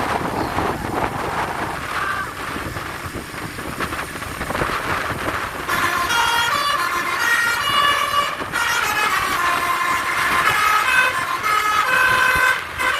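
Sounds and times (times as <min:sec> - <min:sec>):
road traffic: 0:00.0 - 0:12.9
wind: 0:00.0 - 0:12.9
bus multi-tone horn melody: 0:05.5 - 0:12.9.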